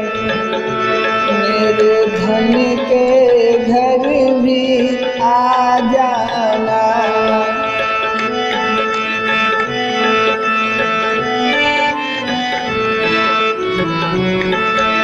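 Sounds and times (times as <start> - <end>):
long held reedy notes: 0.0 - 15.0
tabla drumming: 0.0 - 15.0.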